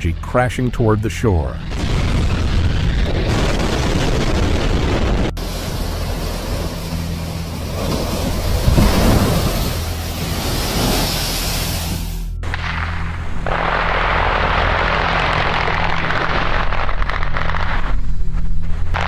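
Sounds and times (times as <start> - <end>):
storm surf crashing: 1.7 - 17.8
wind buffeting microphone: 2.8 - 12.1.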